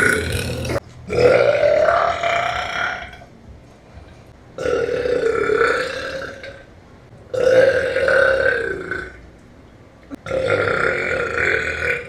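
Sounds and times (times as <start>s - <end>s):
woman belching: 0.0s - 3.2s, 4.6s - 6.6s, 7.4s - 9.2s, 10.2s - 12.0s.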